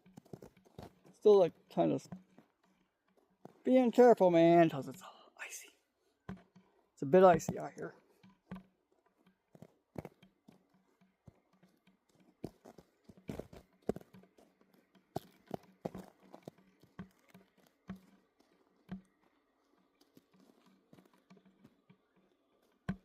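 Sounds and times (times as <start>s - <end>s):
footsteps crunching on icy snow: 0.0s - 5.0s, 9.0s - 21.9s.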